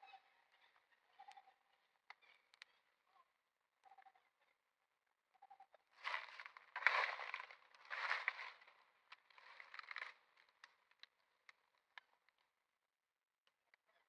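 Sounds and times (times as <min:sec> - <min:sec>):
material rustling and crackling: 0:06.0 - 0:10.1.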